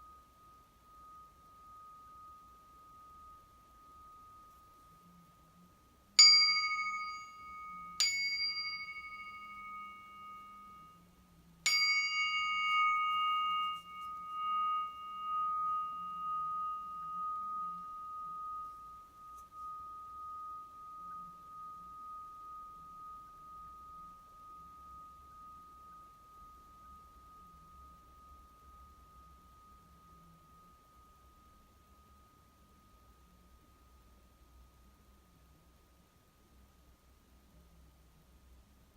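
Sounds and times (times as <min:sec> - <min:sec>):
metal plate bell ringing: 0:06.2 - 0:11.0, 0:11.7 - 0:31.4.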